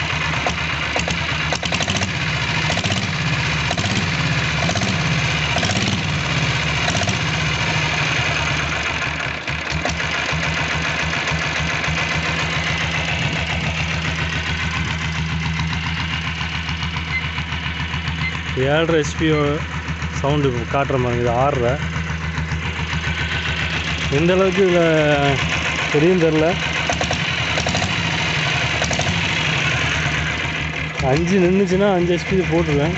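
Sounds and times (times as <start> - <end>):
diesel motorcycle engine idling: 0.0 - 32.9.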